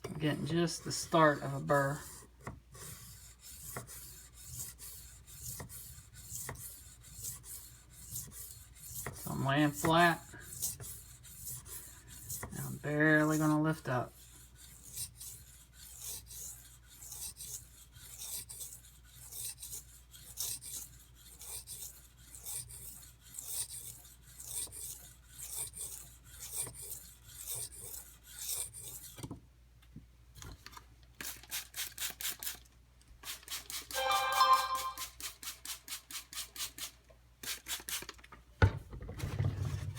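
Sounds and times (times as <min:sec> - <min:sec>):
knife scraping on whetstone: 0:01.0 - 0:29.2.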